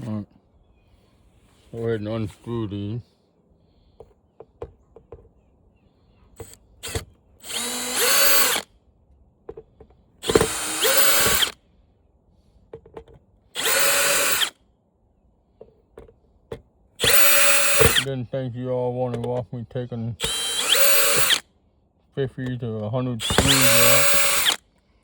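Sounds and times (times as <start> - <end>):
power drill whine: 6.4 - 8.7, 10.2 - 11.6, 13.6 - 14.5, 17.0 - 18.1, 20.2 - 21.4, 23.2 - 24.6.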